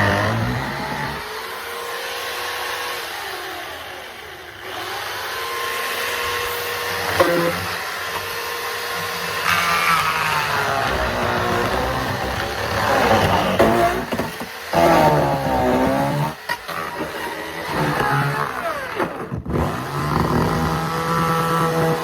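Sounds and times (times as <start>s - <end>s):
chainsaw revving: 0.0s - 1.5s, 8.8s - 22.0s.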